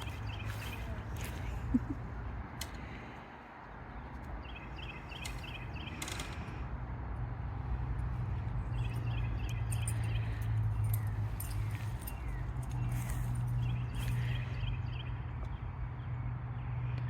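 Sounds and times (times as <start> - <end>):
bird chirping: 3.9 - 6.6, 8.4 - 15.6.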